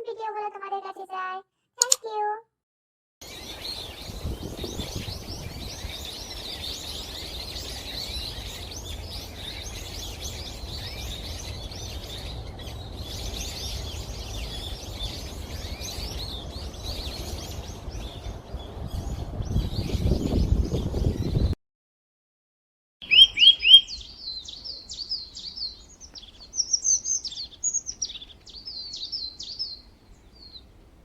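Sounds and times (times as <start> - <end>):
small birds chirping: 3.2 - 21.5, 23.0 - 30.8
steady low rumble: 3.8 - 6.4.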